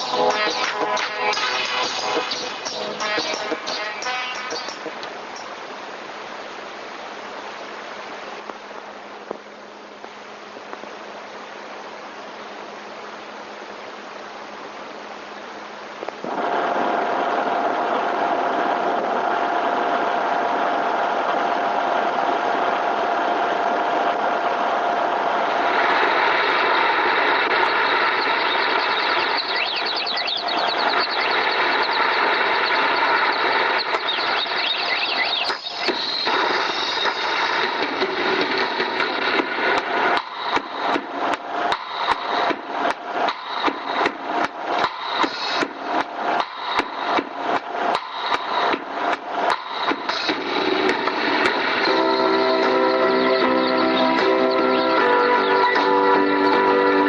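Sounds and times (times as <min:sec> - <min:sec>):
higher mechanical tones: 0:16.3 - 0:57.0.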